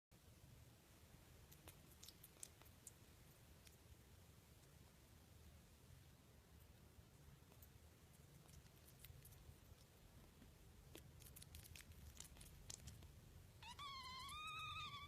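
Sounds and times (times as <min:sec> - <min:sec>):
kitten meowing: 0:13.6 - 0:15.0.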